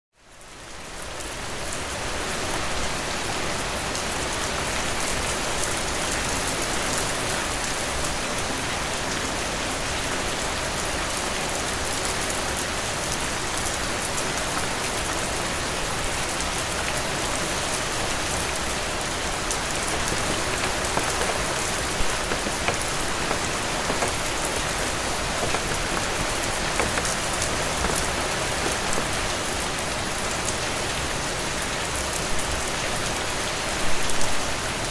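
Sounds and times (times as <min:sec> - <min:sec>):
steady rain falling: 0:11.2 - 0:33.8.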